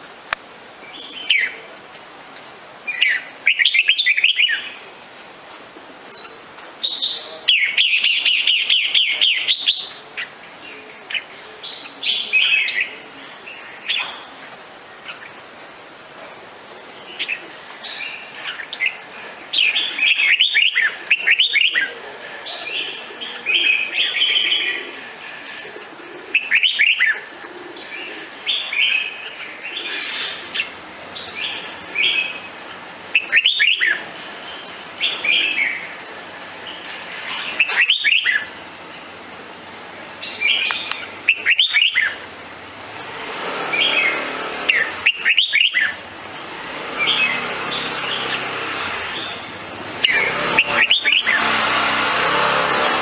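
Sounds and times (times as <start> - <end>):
bird singing warbling phrases: 0.8 - 1.6, 2.9 - 4.8, 6.1 - 14.3, 17.0 - 36.0, 36.6 - 39.1, 40.2 - 42.3, 43.7 - 46.1, 47.0 - 51.6.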